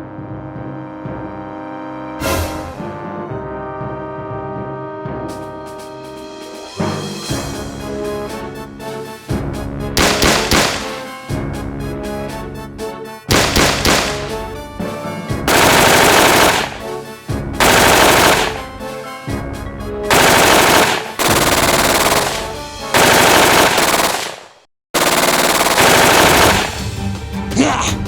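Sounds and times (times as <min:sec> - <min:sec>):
background music: 0:00.0 - 0:24.3, 0:25.2 - 0:28.0
automatic gunfire bursts: 0:10.0 - 0:11.1, 0:13.3 - 0:14.5, 0:15.5 - 0:17.0, 0:17.6 - 0:18.8, 0:20.1 - 0:27.0.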